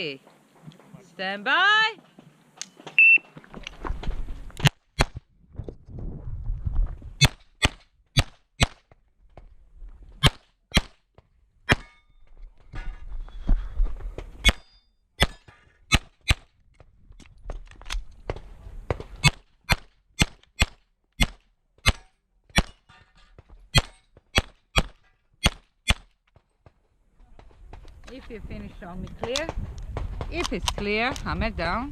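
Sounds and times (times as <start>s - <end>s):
movement noise: 1.9s - 7.2s, 12.2s - 14.4s
shot timer beep: 3.0s - 3.2s.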